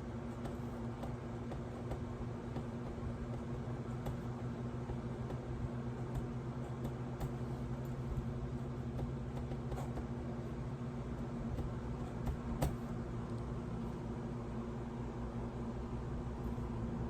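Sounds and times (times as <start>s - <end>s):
washing machine humming: 0.0s - 17.0s.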